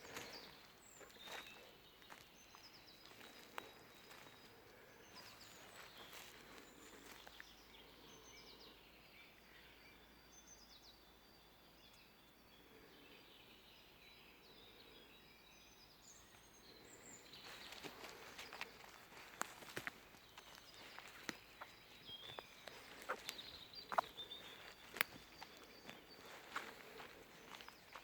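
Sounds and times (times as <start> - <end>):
songbirds chirping: 0.0 - 28.0
soft crackles: 16.9 - 28.0.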